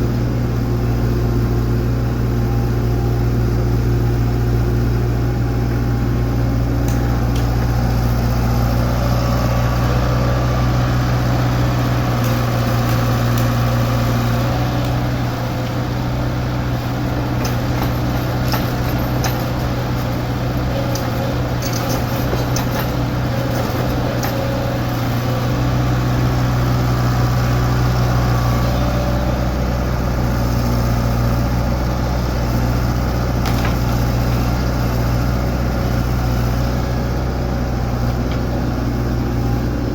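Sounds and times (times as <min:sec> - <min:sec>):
excavator diesel engine running: 0:00.0 - 0:39.9
sharp clinks and knocks: 0:17.0 - 0:25.0.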